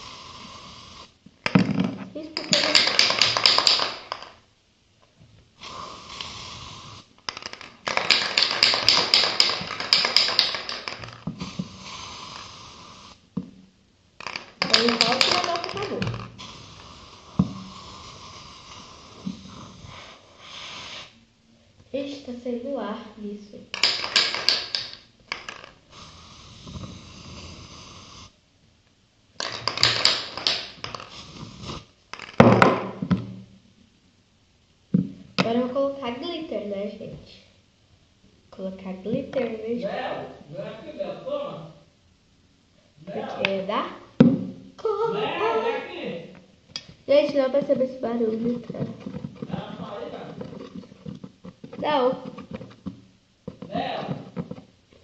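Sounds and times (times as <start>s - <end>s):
plastic bottle sputtering air: 0.0s - 1.7s, 2.4s - 4.4s, 5.6s - 13.5s, 14.2s - 21.2s, 23.7s - 28.4s, 29.4s - 33.1s, 46.8s - 54.8s
steady hiss: 0.0s - 55.0s
scratchy handling and rubbing: 47.1s - 54.8s.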